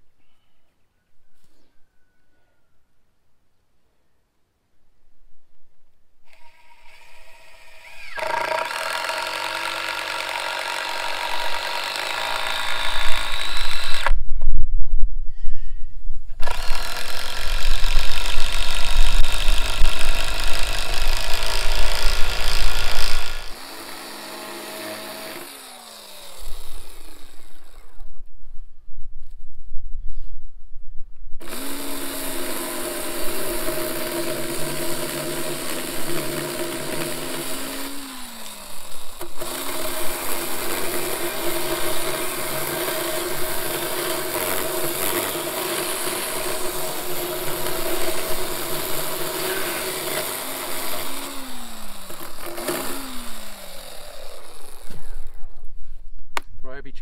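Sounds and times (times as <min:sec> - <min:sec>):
electric chainsaw cutting wood: 0:06.3 - 0:14.2, 0:16.4 - 0:28.1, 0:31.4 - 0:55.6.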